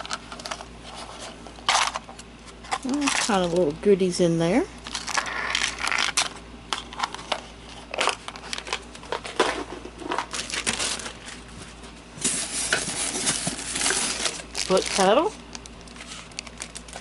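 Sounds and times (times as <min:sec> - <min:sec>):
plastic wrapping crinkling: 0:10.0 - 0:17.0.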